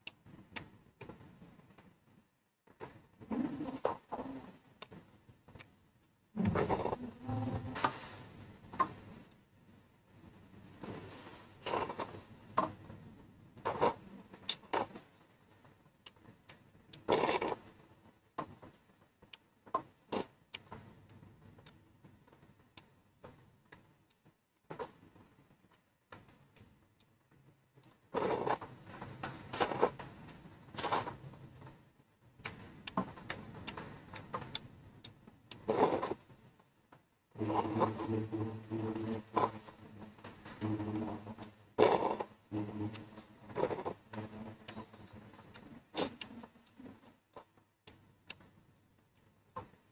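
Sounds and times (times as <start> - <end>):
person slurping noodle soup: 6.4 - 8.3, 10.8 - 12.3, 13.6 - 14.9, 17.1 - 17.6, 28.1 - 28.7, 29.4 - 30.0, 30.7 - 31.2, 35.5 - 36.2, 37.4 - 47.0.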